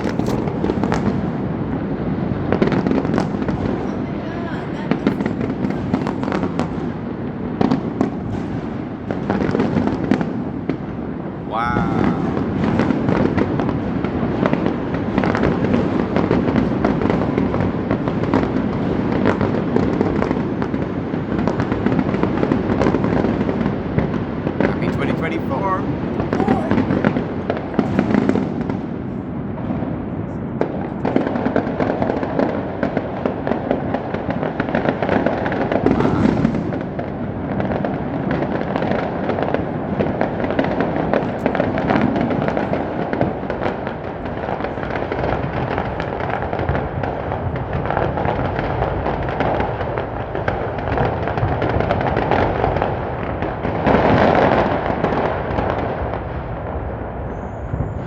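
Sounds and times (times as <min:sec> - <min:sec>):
fireworks bangs and crackles: 0:00.0 - 0:58.0.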